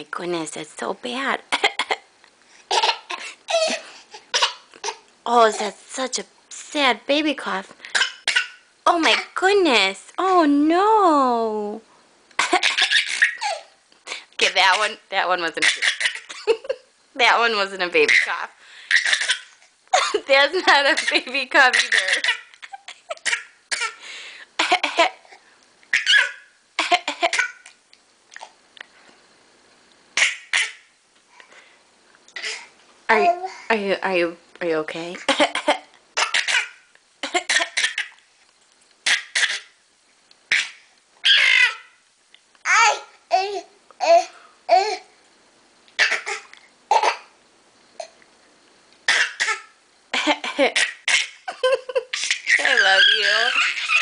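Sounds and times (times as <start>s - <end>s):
young child coughing: 1.5s - 2.1s, 2.7s - 5.0s, 7.9s - 9.3s, 12.4s - 13.6s, 15.6s - 16.6s, 18.9s - 20.3s, 24.6s - 25.2s, 35.2s - 38.1s, 46.0s - 47.3s, 49.1s - 51.4s.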